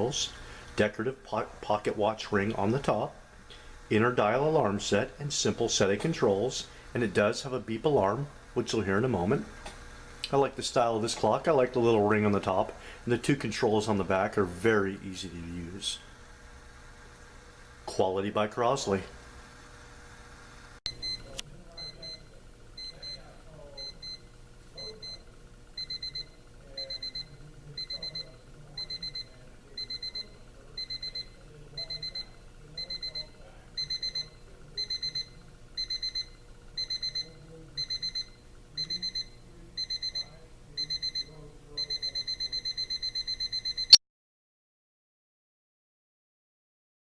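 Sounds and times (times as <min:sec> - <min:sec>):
alarm clock beeping: 0:25.8 - 0:44.0.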